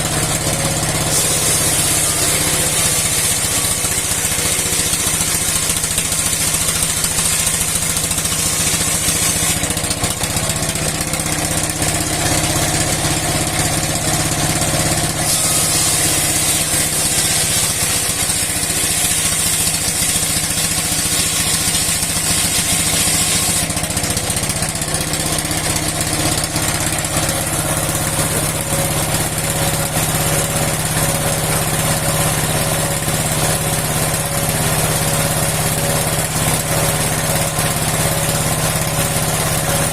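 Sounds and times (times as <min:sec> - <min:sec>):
old engine running: 0:00.0 - 0:39.9.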